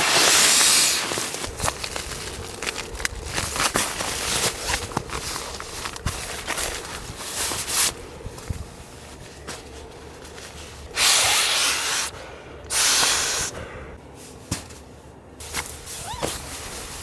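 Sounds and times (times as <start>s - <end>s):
loud hissing bursts: 10.9s - 14.0s.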